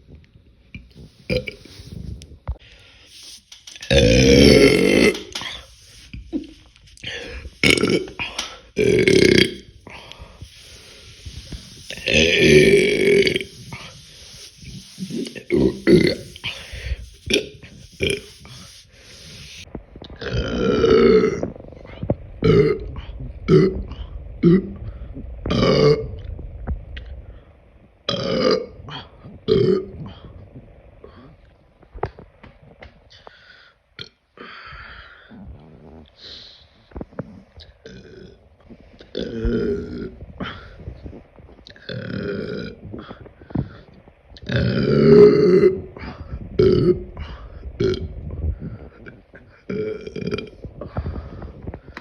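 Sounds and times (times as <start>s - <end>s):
woman belching: 1.3s - 1.6s, 3.9s - 5.5s, 7.6s - 8.2s, 8.8s - 9.7s, 12.1s - 13.5s, 49.7s - 50.6s
woman burping: 1.3s - 1.6s, 3.9s - 5.4s, 7.6s - 9.7s.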